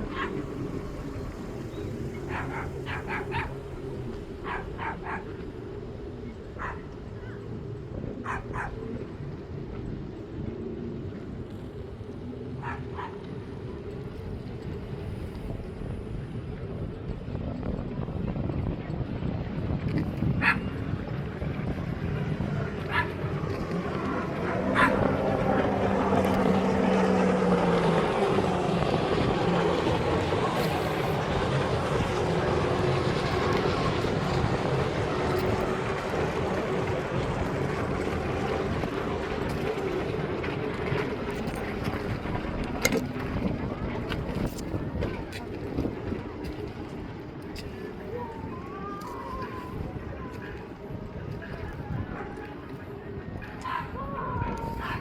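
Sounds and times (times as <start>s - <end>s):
engine drone: 0.0s - 53.7s
steady low rumble: 0.0s - 55.0s
dog barking: 0.1s - 0.4s, 2.3s - 3.5s, 4.4s - 5.3s, 6.6s - 6.9s, 8.2s - 8.8s, 12.6s - 13.2s, 20.4s - 20.7s, 22.9s - 23.1s, 24.8s - 25.0s.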